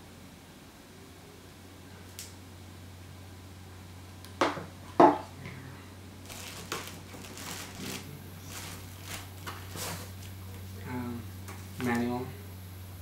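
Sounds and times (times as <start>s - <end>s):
packaging rustling: 6.2s - 10.6s.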